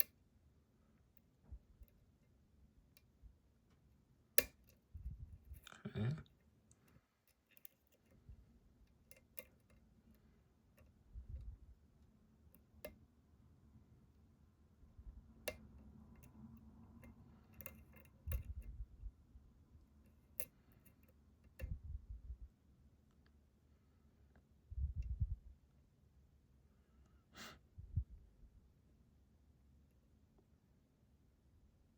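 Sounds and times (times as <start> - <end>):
lock pick clicking on pins: 4.4 - 4.8, 8.8 - 9.8, 15.5 - 18.7.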